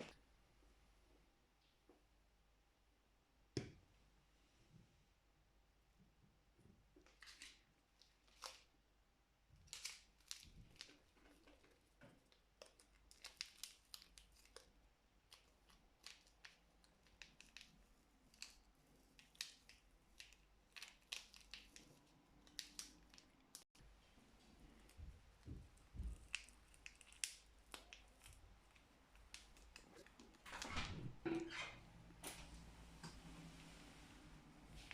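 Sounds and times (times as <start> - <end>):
packaging crinkling and tearing: 9.6 - 23.6, 26.1 - 30.5.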